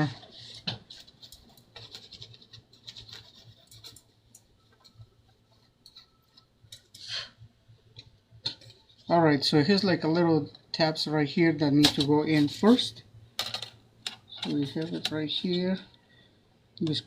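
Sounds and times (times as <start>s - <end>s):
hands scratching inside laptop: 0.3s - 4.2s.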